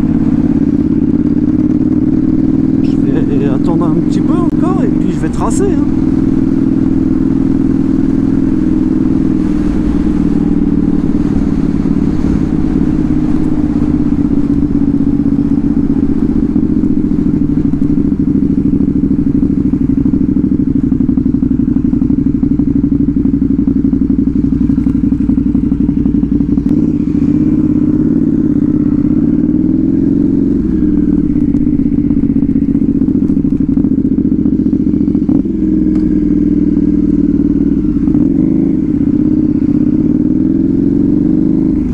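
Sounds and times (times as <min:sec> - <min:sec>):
motorcycle engine idling: 0:00.0 - 0:41.9.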